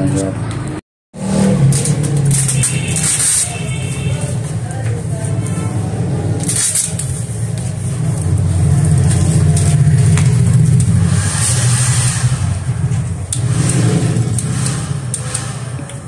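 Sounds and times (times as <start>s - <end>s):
motorcycle engine running: 7.5s - 16.0s.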